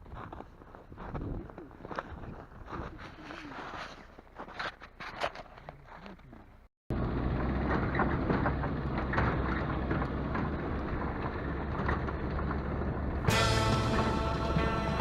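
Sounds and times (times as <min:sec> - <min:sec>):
rushing noise of travel: 0:06.9 - 0:15.0
vehicle engine running: 0:06.9 - 0:15.0.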